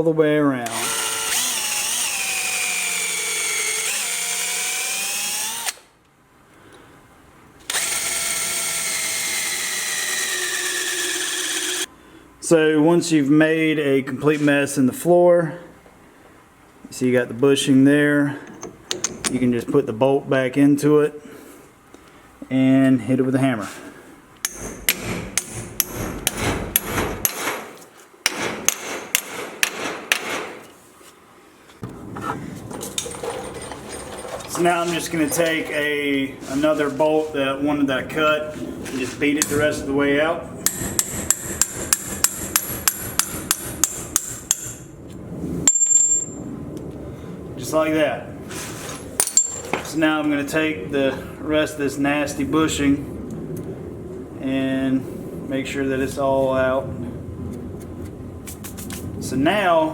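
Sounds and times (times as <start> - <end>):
electric drill boring rubber: 0.7 - 5.8, 7.7 - 11.9
hammer striking metal bolt: 24.4 - 27.7.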